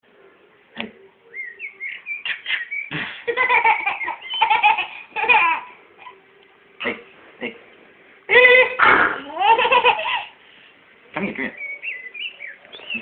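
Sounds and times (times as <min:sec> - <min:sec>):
baby laughing: 0:02.2 - 0:06.2, 0:08.3 - 0:10.4
baby squealing: 0:08.3 - 0:10.3.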